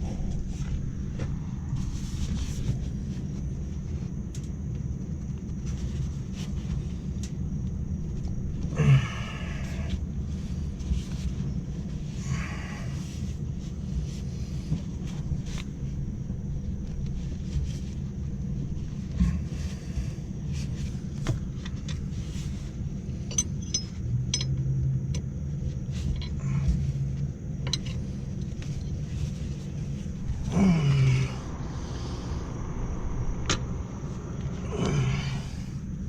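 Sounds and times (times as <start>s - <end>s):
low rumble: 0.0s - 6.2s, 26.4s - 36.0s
low hum: 0.0s - 36.0s.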